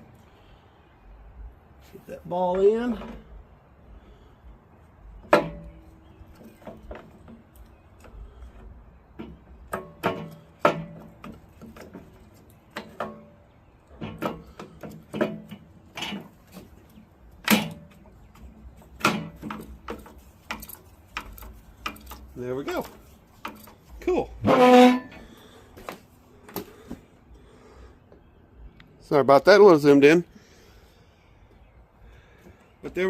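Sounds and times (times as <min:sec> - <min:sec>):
metal parts clinking and knocking: 0:13.9 - 0:25.2.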